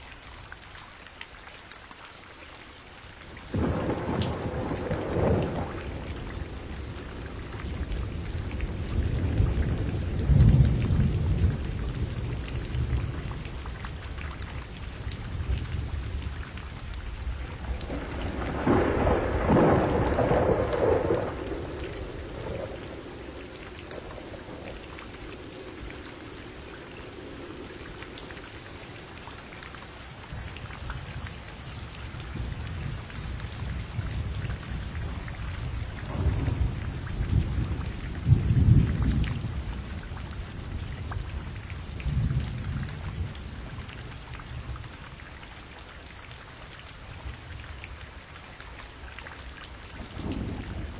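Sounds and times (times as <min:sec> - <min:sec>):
rain falling steadily: 0:00.0 - 0:50.9
thunder rolling: 0:03.5 - 0:13.1, 0:17.6 - 0:28.4, 0:36.0 - 0:39.6, 0:50.1 - 0:50.9.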